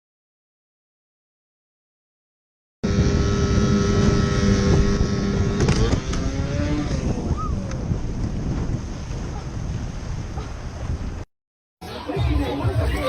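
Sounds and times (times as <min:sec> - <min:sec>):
engine running: 0:02.8 - 0:07.5.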